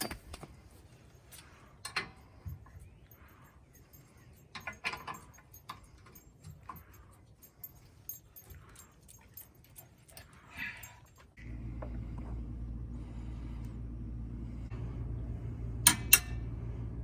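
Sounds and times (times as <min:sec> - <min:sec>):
metallic clinks of tools: 0:01.0 - 0:11.3.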